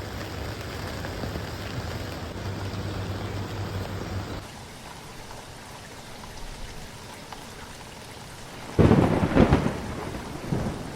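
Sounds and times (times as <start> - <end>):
steady rain falling: 0.0 - 10.9
loud thunder clap: 8.8 - 10.9.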